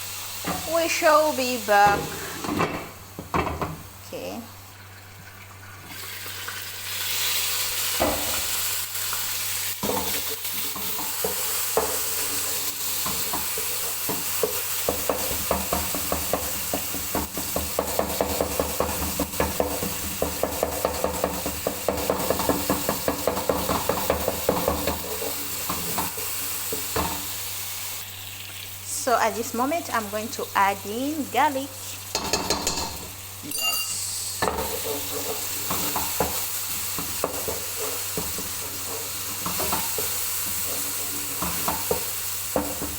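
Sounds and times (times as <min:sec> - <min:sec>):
vegetables sizzling in oil: 0:00.0 - 0:42.9
spoon scraping and tapping pan: 0:09.8 - 0:27.3, 0:32.1 - 0:42.9.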